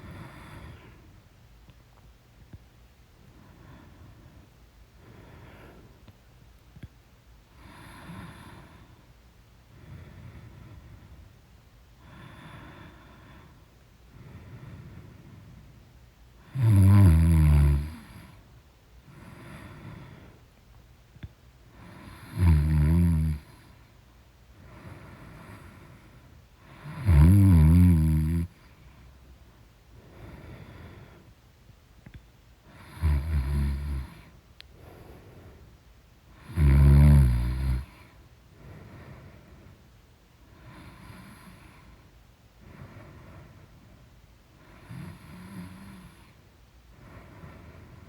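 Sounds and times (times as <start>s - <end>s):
quiet breathing: 0.0s - 48.0s
woman snoring loudly: 16.5s - 18.1s, 22.1s - 23.5s, 26.8s - 28.5s, 32.8s - 34.2s, 36.4s - 38.0s.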